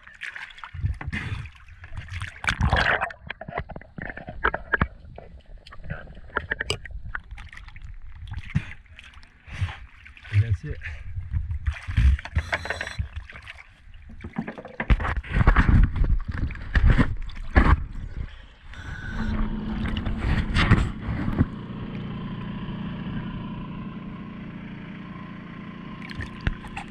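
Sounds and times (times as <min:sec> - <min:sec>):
steady underwater hum: 0:00.1 - 0:14.3, 0:16.3 - 0:26.9
underwater bubbling: 0:16.0 - 0:21.5
faint high tone: 0:18.7 - 0:19.6.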